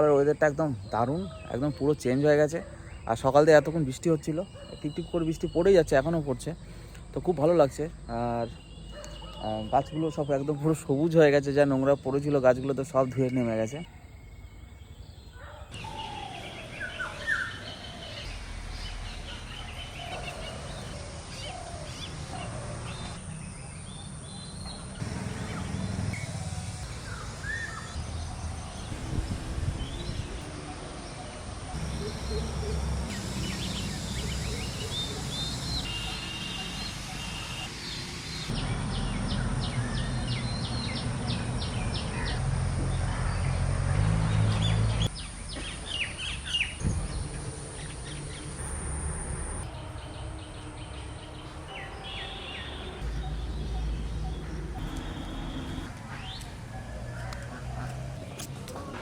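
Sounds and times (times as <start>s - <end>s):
birds chirping: 0.0s - 59.0s
outdoor background hum: 13.9s - 59.0s.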